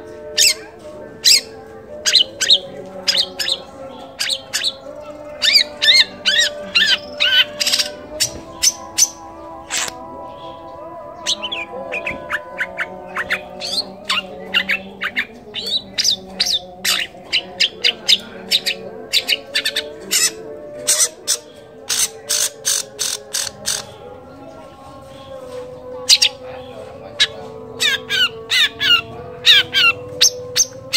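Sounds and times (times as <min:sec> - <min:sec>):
shrike singing sharp chirps: 0:01.2 - 0:24.0.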